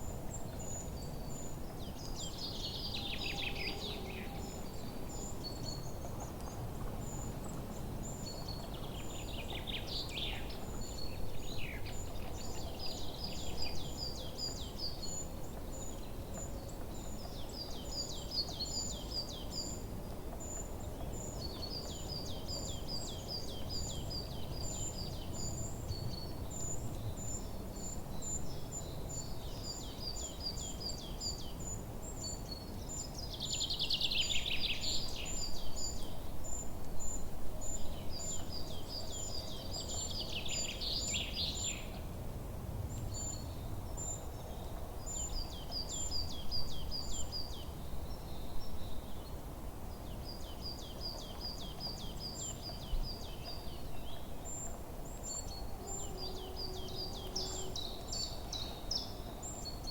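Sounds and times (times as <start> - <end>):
songbirds chirping and singing: 50.5 - 59.8.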